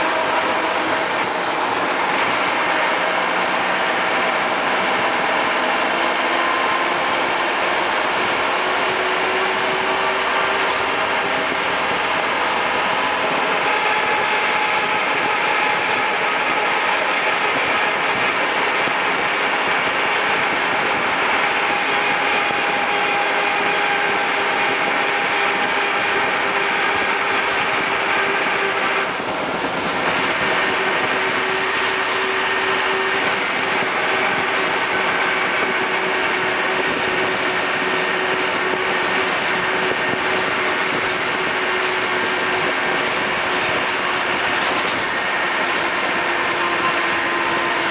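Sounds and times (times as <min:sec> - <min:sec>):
vehicle drivetrain and road noise: 0:00.0 - 0:47.9
whining tones: 0:00.0 - 0:47.9
fine rattling clatter: 0:24.4 - 0:47.9.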